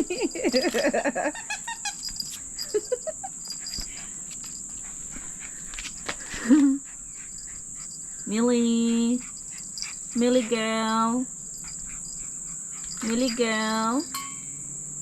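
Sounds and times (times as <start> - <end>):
crickets chirping: 0.0 - 15.0
puppy whining and yipping: 0.5 - 4.1.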